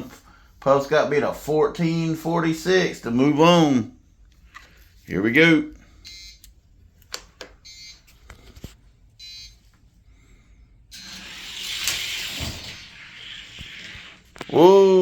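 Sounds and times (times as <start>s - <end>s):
toy cars rolling down track: 10.9s - 14.5s.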